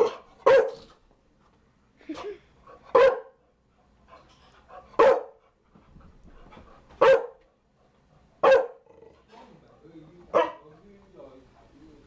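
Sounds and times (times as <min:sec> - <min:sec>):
dog barking: 0:00.0 - 0:00.9, 0:02.9 - 0:03.4, 0:05.0 - 0:05.4, 0:07.0 - 0:07.4, 0:08.4 - 0:08.9, 0:10.3 - 0:10.7.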